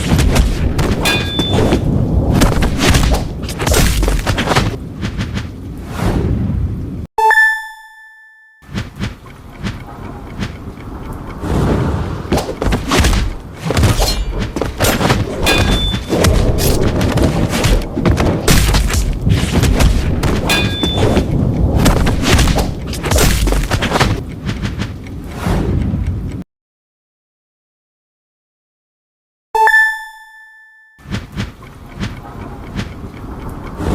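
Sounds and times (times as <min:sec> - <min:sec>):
thuds booms and crashes: 0:00.0 - 0:06.7, 0:11.4 - 0:24.8
short high beep: 0:07.2 - 0:08.6.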